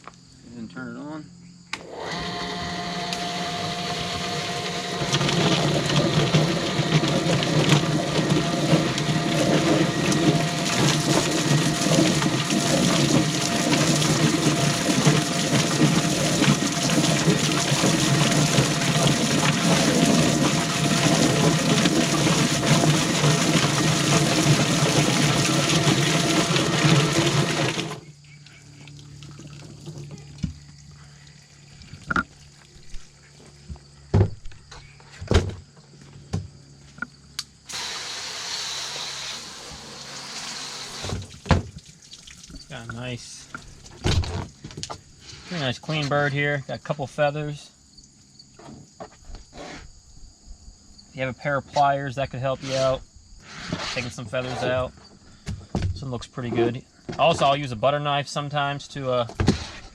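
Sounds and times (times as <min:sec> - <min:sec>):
chicken plucker motor hum: 0:01.7 - 0:33.8, 0:36.0 - 0:41.3.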